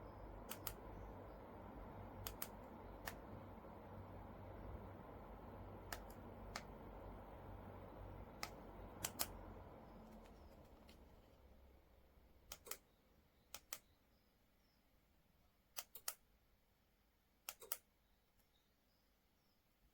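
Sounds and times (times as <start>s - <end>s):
faint low hum: 0.0s - 19.9s
sharp small clicks: 0.4s - 1.0s, 2.2s - 3.3s, 5.8s - 6.8s, 8.4s - 11.4s, 12.5s - 12.9s, 13.5s - 14.0s, 15.7s - 16.3s, 17.4s - 18.5s.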